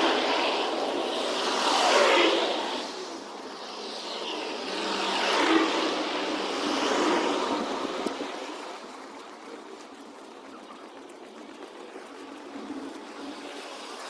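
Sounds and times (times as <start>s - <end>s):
vehicle passing by: 0.0s - 9.0s.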